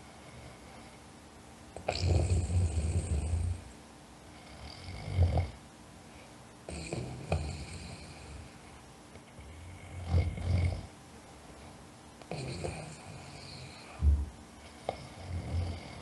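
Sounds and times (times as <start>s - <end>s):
person snoring: 1.8s - 3.6s, 4.5s - 5.6s, 6.7s - 8.5s, 9.3s - 10.9s, 12.3s - 14.1s, 14.7s - 16.0s.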